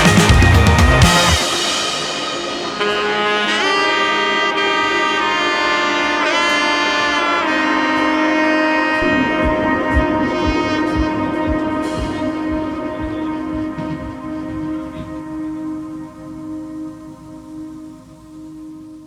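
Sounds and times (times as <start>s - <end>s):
saxophone-like lead melody: 0.0s - 18.3s
low beat: 9.0s - 18.2s.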